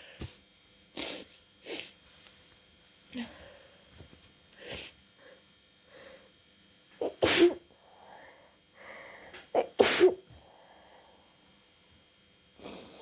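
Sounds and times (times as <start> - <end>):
soft sniffs: 1.0 - 2.0, 4.6 - 5.0
long in-breath: 4.6 - 6.4, 7.7 - 9.5, 10.3 - 11.4
person sneezing: 7.0 - 7.7, 9.4 - 10.4.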